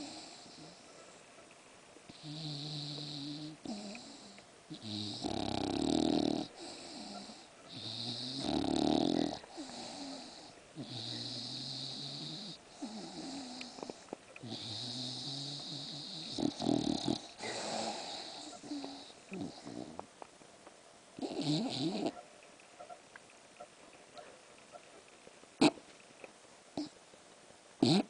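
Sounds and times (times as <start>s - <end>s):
dog snoring: 0.0s - 0.8s, 2.1s - 20.1s, 21.2s - 22.2s, 26.8s - 27.0s, 27.8s - 28.0s
dog snorts: 2.1s - 20.1s, 21.2s - 22.2s, 25.6s - 25.9s, 27.8s - 28.0s.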